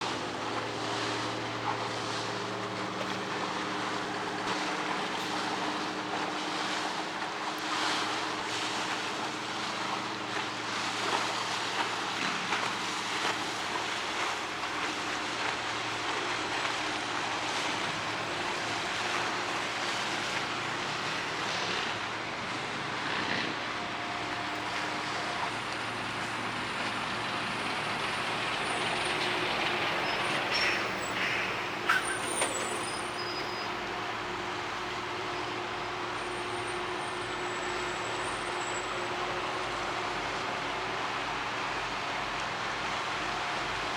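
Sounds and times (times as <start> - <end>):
boat diesel engine humming: 0.0 - 43.9
rushing water noise: 0.0 - 43.9.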